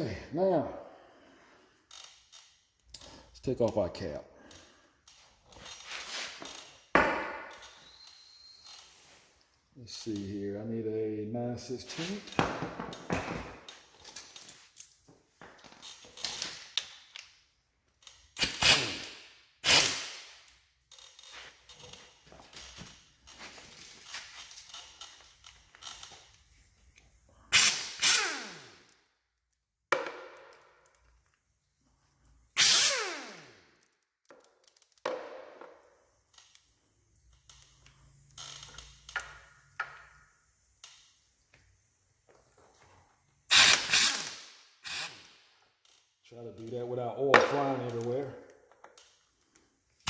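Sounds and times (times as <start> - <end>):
air impact wrench whining: 18.4 - 20.4, 27.5 - 28.9, 32.6 - 33.6, 43.5 - 45.3.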